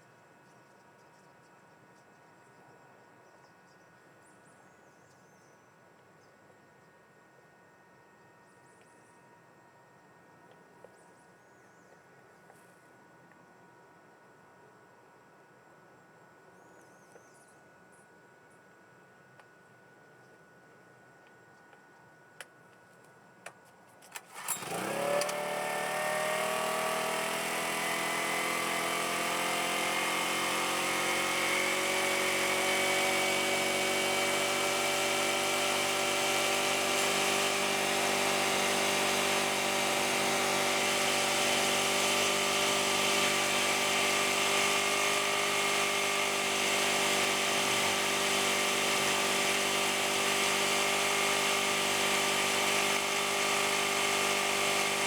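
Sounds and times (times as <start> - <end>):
generator engine starting and running: 24.2 - 55.0.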